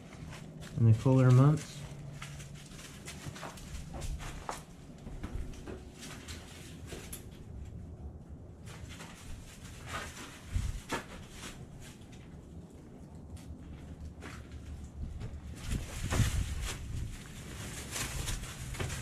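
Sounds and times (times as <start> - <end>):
footsteps and scuffs: 0.0 - 7.1.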